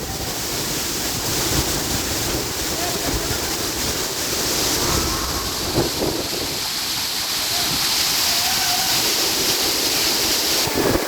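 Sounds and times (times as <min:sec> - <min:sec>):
wind buffeting microphone: 0:00.0 - 0:08.2
waterfall roaring: 0:00.0 - 0:11.0.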